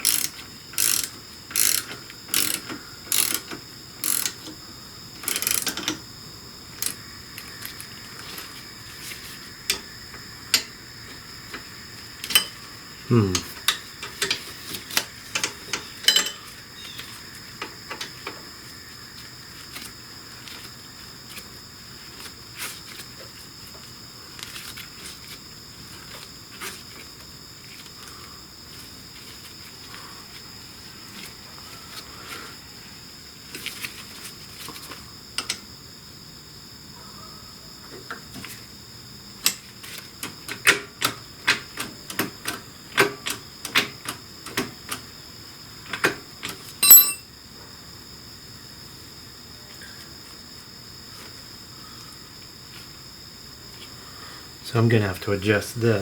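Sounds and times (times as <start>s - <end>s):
hand tools clicking on metal: 0.0s - 4.6s, 5.2s - 6.0s, 12.2s - 12.6s, 15.3s - 16.5s, 46.8s - 47.3s.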